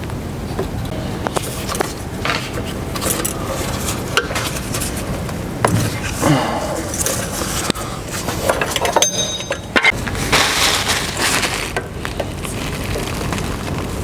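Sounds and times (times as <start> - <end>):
steady noisy background: 0.0 - 14.0
metal tools clinking and scraping: 1.3 - 6.2, 6.8 - 10.0.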